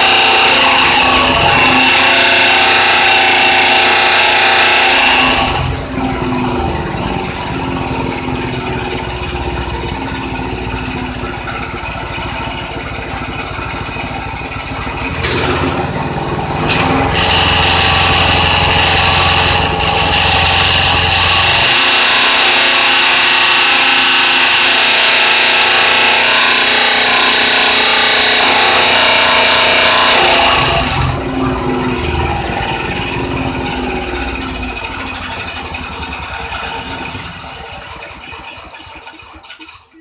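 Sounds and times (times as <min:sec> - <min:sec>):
machine running hissy: 0:00.0 - 0:05.9, 0:15.3 - 0:38.9.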